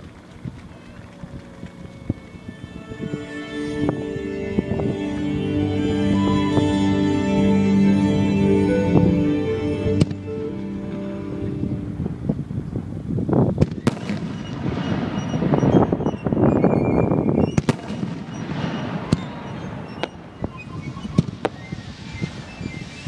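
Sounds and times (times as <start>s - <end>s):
fireworks crackling: 13.3s - 23.0s
fireworks bangs and pops: 13.5s - 23.0s.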